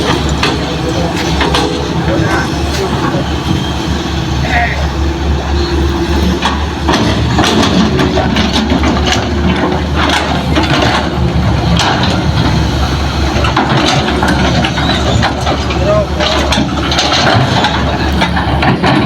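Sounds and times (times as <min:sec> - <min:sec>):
excavator diesel engine running: 0:00.0 - 0:19.0
soil and rock clattering: 0:06.2 - 0:19.0.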